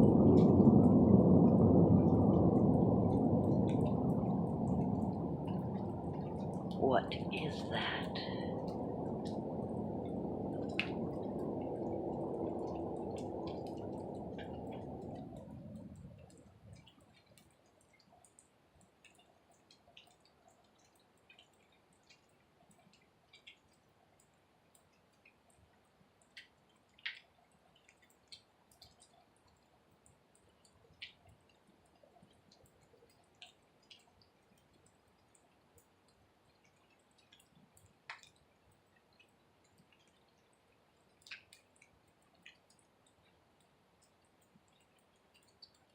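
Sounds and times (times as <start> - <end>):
low rumbling roar from sky: 0.0 - 17.4.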